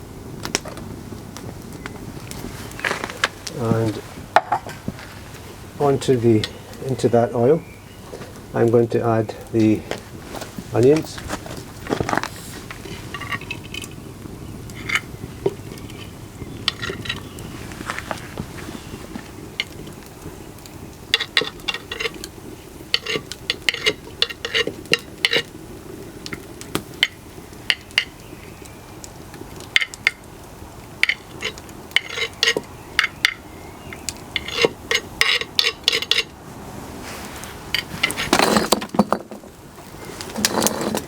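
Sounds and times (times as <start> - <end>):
onions sizzling in oil: 12.1 - 36.2
spoon scraping pot: 14.7 - 19.0, 21.2 - 22.3, 22.9 - 25.5, 31.1 - 36.3.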